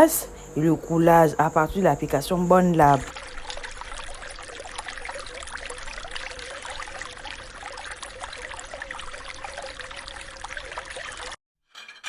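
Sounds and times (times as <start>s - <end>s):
water trickling: 0.0s - 11.4s.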